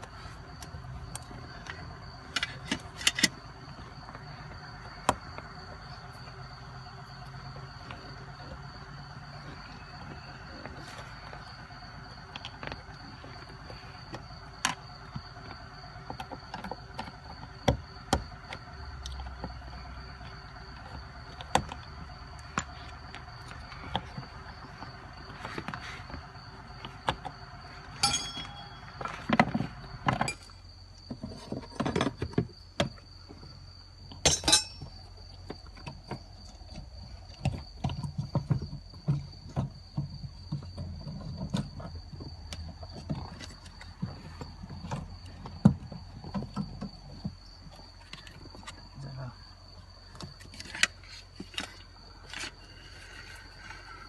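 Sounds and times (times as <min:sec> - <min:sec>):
ringing metal strikes: 0:28.0 - 0:29.0
hand tools clinking: 0:28.0 - 0:29.3, 0:34.2 - 0:34.9.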